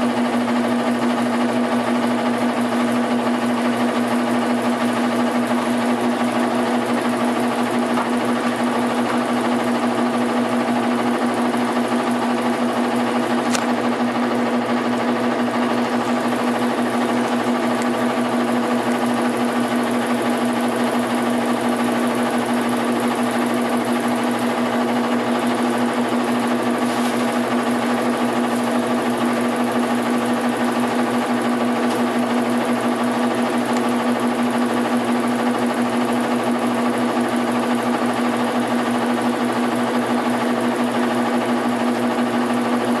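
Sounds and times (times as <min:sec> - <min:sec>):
washing machine humming: 0:00.0 - 0:43.0.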